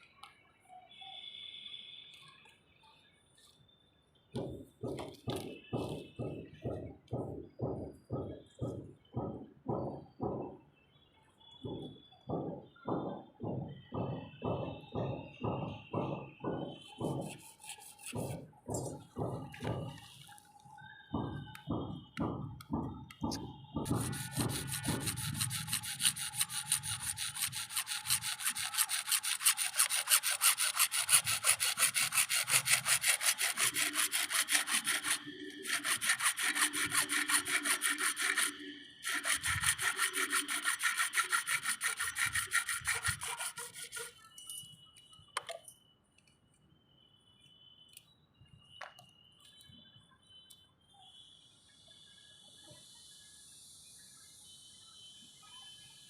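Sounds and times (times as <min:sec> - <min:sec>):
hand saw cutting plastic pipe: 0:16.4 - 0:20.0, 0:22.7 - 0:44.3.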